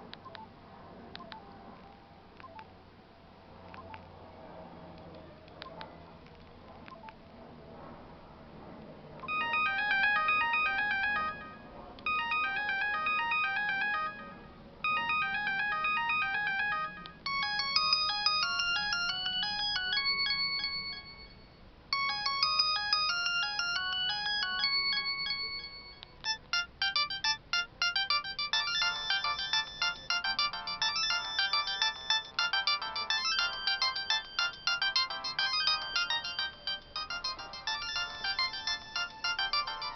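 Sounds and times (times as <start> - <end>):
electronic ringtone melody: 9.3 - 39.9.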